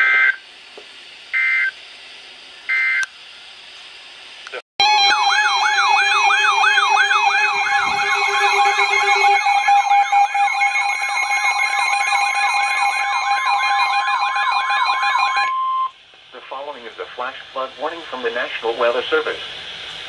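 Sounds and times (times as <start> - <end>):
electronic siren alarm warbling: 4.8 - 15.9
steady alert tone: 4.8 - 15.9.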